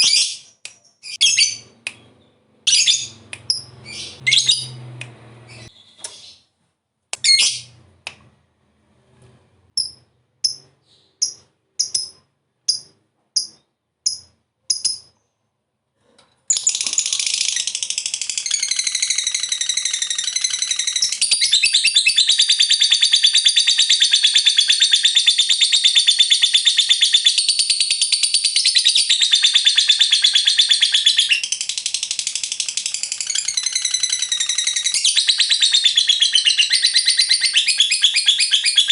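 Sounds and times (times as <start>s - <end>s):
lovebird chirps: 0.0s - 4.8s, 7.2s - 7.7s, 9.8s - 15.4s
lovebird rapid chattering trill: 9.8s - 15.1s.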